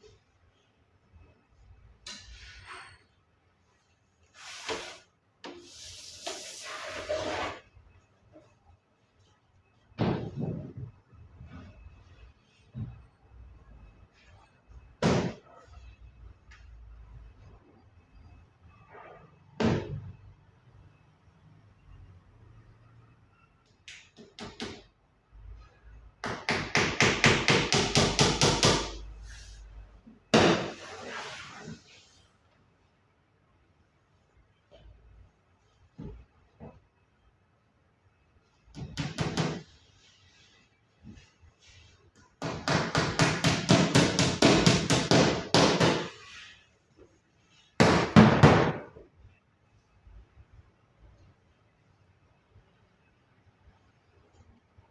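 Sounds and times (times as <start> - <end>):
hammer striking wood: 26.2 - 29.0, 42.4 - 46.1.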